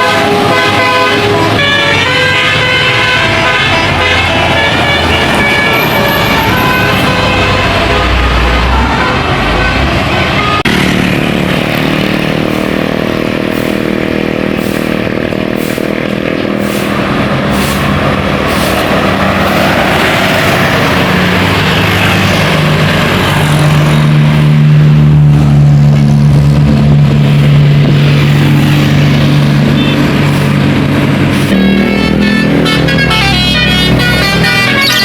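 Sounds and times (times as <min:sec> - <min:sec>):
multi-tone bus air horn: 0:00.0 - 0:10.7, 0:29.6 - 0:35.0
bus passing by: 0:00.0 - 0:35.0.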